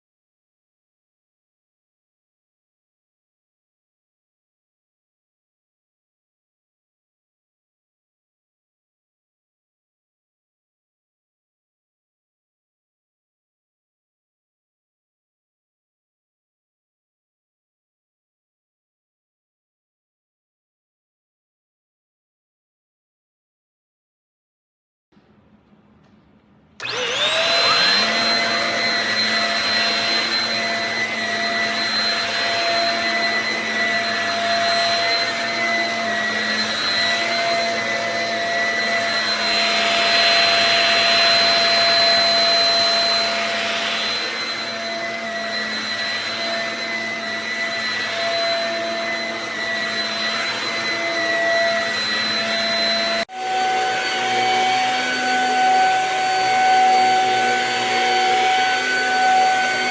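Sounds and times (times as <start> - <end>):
vacuum cleaner motor whining: 26.8 - 59.9.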